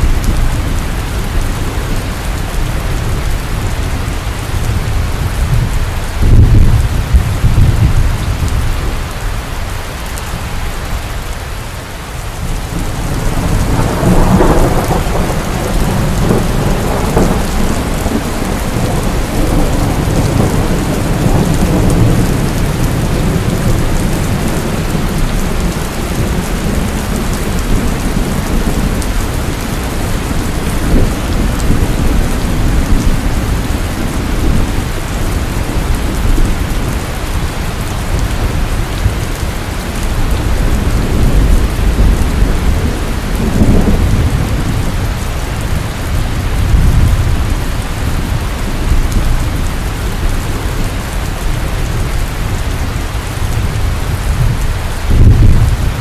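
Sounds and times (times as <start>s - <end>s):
rolling thunder: 0.0s - 9.2s, 12.4s - 56.0s
heavy rain pouring: 0.0s - 56.0s.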